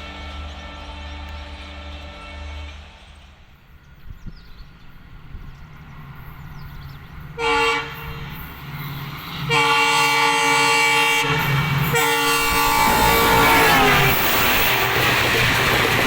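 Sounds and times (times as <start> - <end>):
train horn blasts: 0.0 - 3.2, 7.4 - 8.4, 9.4 - 15.4
low train rumble: 0.0 - 16.0.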